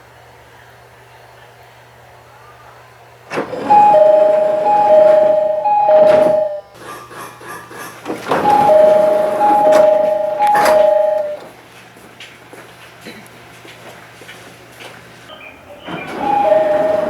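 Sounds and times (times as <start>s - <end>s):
train door two-note chime: 3.3s - 6.7s, 8.4s - 11.5s, 16.0s - 17.0s.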